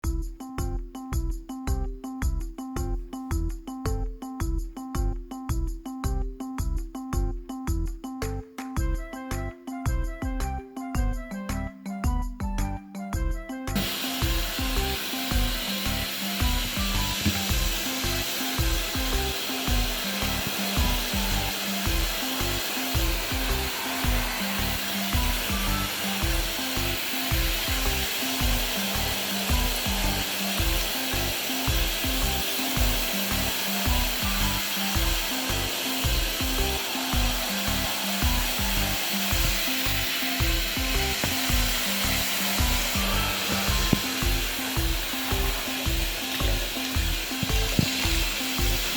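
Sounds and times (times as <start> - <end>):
background music with steady beat: 0.0 - 48.9
continuous hiss: 13.8 - 48.9.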